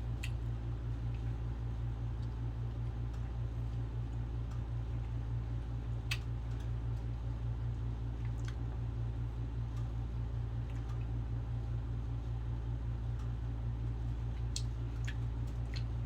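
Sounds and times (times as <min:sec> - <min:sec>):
low background hum: 0:00.0 - 0:16.0
faint eating clicks: 0:00.1 - 0:05.2, 0:05.8 - 0:08.9, 0:09.6 - 0:11.2, 0:14.3 - 0:16.0.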